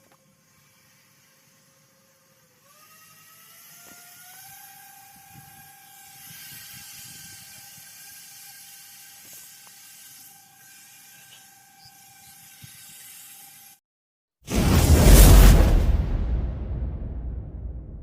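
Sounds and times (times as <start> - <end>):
electric motor whine: 0.0 - 13.8.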